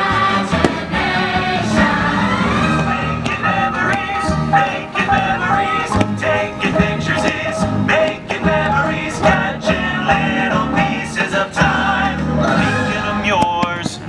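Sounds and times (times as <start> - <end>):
music with singing and beat: 0.0 - 14.0.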